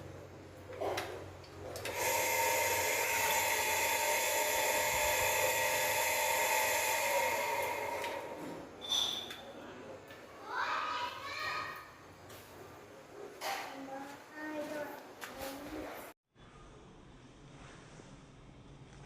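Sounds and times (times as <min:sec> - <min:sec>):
small electric motor whining: 0:01.9 - 0:08.6.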